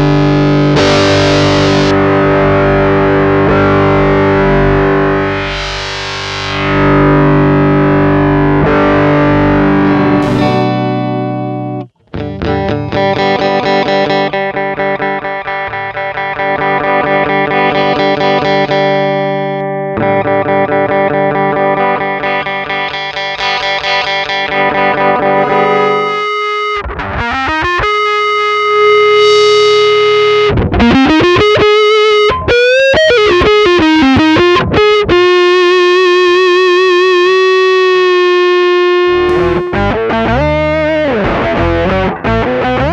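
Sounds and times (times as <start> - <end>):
distorted electric guitar: 0.0 - 17.3, 39.0 - 40.4.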